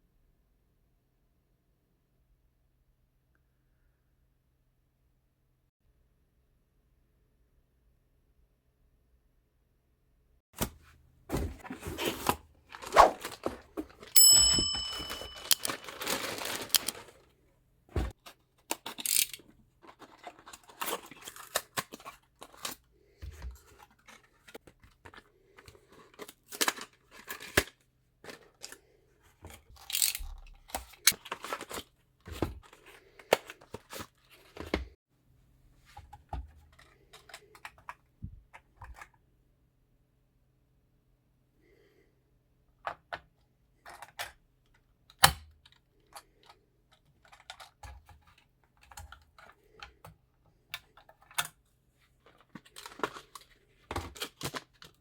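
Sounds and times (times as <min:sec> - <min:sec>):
packaging tearing and crinkling: 0:11.8 - 0:14.0, 0:15.4 - 0:17.2, 0:52.7 - 0:55.0
short high ring: 0:14.2 - 0:15.7.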